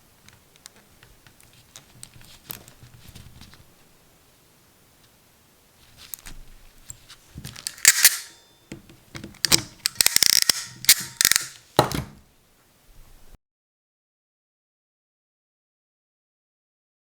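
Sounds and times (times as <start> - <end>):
crimping tool clicking and snapping: 7.6 - 8.3, 9.3 - 11.6.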